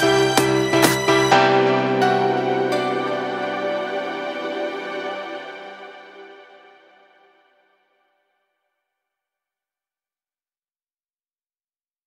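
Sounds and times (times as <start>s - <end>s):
sustained keyboard tones music: 0.0s - 6.7s.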